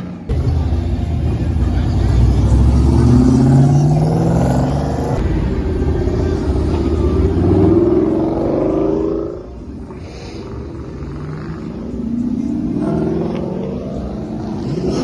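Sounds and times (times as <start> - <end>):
car engine accelerating hard: 0.0 - 15.0.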